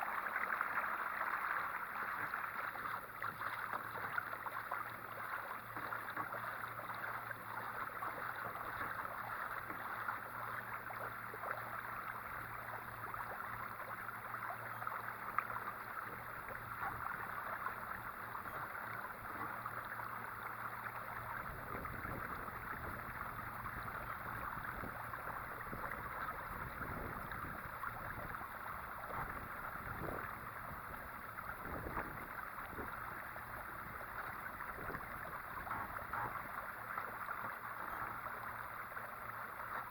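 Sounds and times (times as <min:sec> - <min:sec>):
water rushing along hull: 0:00.0 - 0:39.9.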